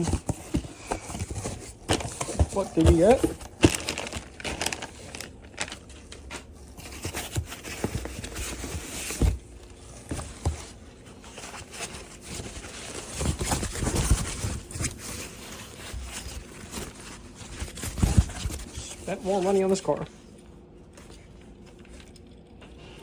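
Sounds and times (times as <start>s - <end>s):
packaging rustling and tearing: 0.0s - 19.8s.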